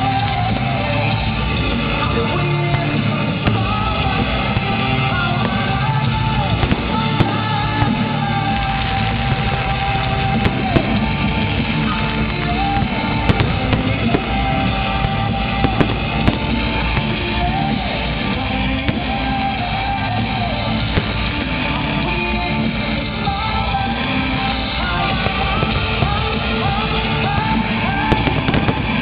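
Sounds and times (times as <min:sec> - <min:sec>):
firework bangs: 0:00.0 - 0:29.0
rock music with electric guitar: 0:00.0 - 0:29.0.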